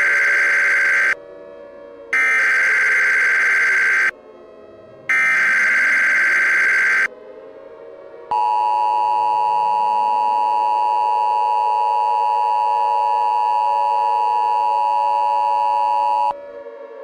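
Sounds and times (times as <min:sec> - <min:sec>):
two-tone alarm signal: 0:00.0 - 0:01.2, 0:02.2 - 0:04.2, 0:05.1 - 0:07.1, 0:08.3 - 0:16.4.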